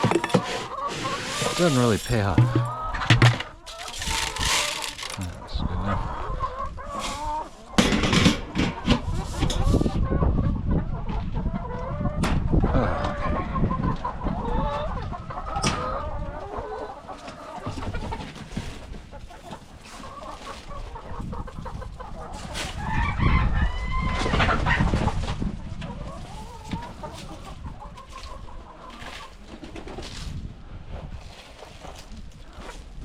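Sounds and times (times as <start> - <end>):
chickens clucking: 0.0 - 30.4.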